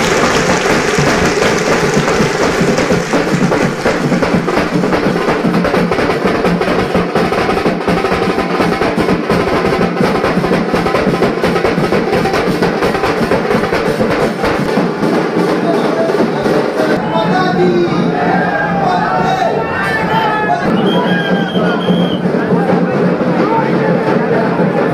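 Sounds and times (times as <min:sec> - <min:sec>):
rapid drumming: 0:00.0 - 0:17.6.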